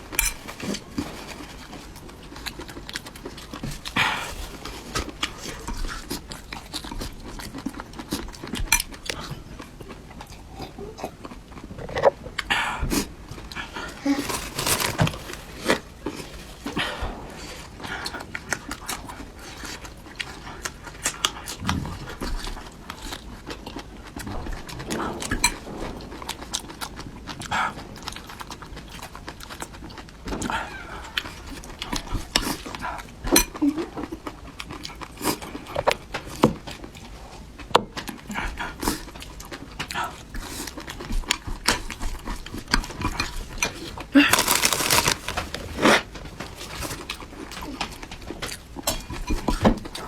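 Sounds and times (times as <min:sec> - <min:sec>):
chewing and slurping: 0:38.0 - 0:50.0.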